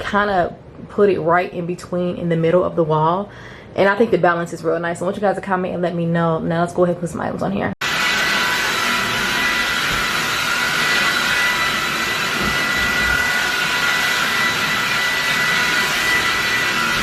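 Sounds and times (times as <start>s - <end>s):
electric motor blowing air: 7.8s - 17.0s.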